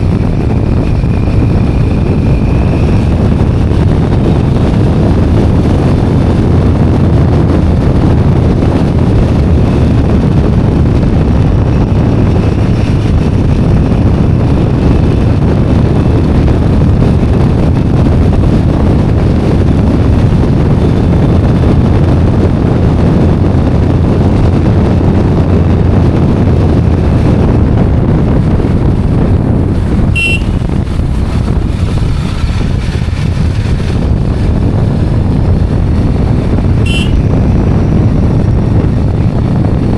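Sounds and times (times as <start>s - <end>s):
motorbike engine running: 0.0s - 39.9s
wind and road noise: 0.0s - 39.9s
short high-pitched beep: 30.2s - 30.5s.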